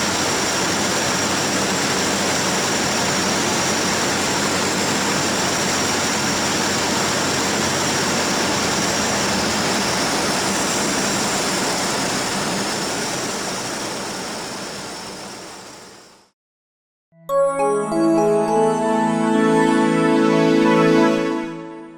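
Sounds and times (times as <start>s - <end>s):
propeller airplane cabin drone: 0.1s - 16.2s.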